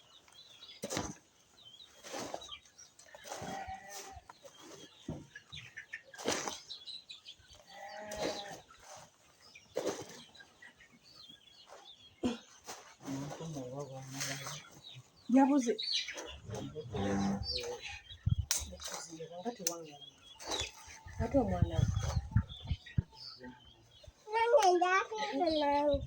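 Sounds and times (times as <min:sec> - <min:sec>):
small birds chirping: 0:00.0 - 0:26.0
livestock calling: 0:15.3 - 0:18.7.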